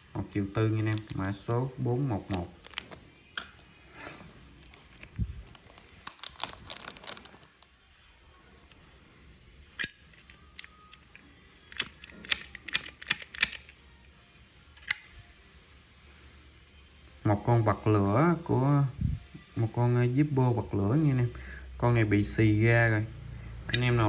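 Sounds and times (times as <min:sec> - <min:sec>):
metal lighters clicking and tapping: 0:09.8 - 0:13.7, 0:14.8 - 0:15.1, 0:23.7 - 0:24.0.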